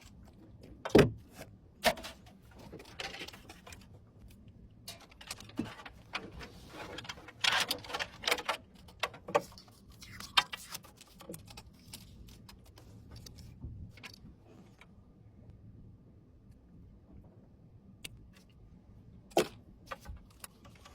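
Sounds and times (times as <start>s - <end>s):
hard parts clicking and clattering: 4.8s - 9.6s.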